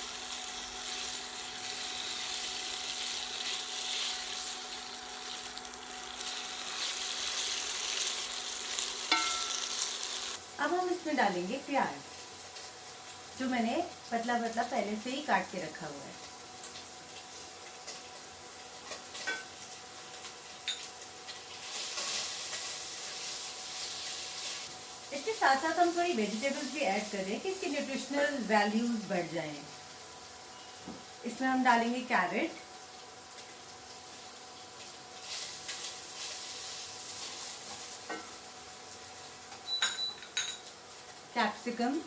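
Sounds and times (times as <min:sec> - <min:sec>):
food sizzling in hot oil: 0:00.0 - 0:42.0
spoon clinking on pan: 0:09.1 - 0:09.8.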